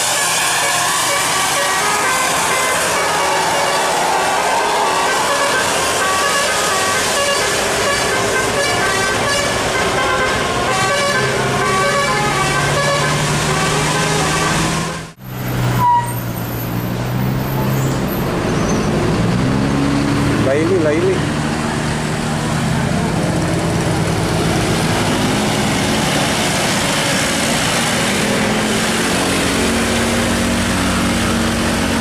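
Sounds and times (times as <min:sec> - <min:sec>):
bus horn playing a tune: 0:00.0 - 0:04.0, 0:04.7 - 0:15.1, 0:15.7 - 0:16.2
road noise: 0:00.0 - 0:32.0.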